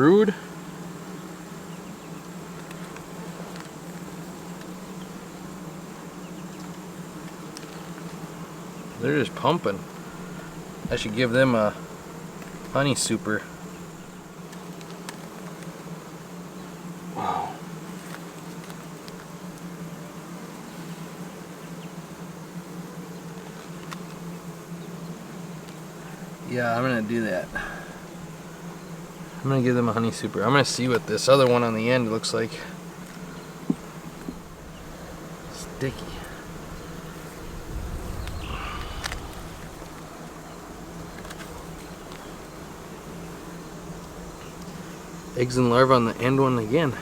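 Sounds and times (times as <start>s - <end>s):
honeybees buzzing: 0.0s - 47.0s
faint ticks: 23.8s - 24.2s, 38.1s - 40.1s.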